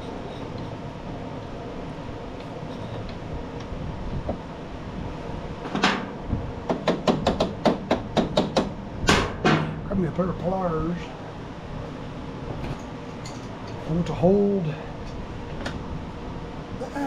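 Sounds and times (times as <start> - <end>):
background hum: 0.0 - 17.0
sharp metal knocks: 6.7 - 9.8.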